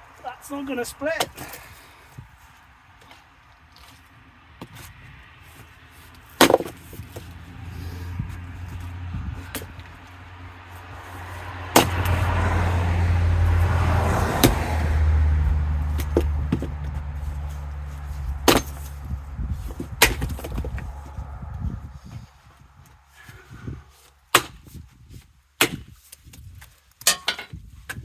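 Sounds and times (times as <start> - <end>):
axe splitting firewood: 6.1 - 9.9, 10.9 - 12.7, 15.9 - 21.2, 23.3 - 25.0, 25.6 - 28.0
low hum: 6.7 - 23.9.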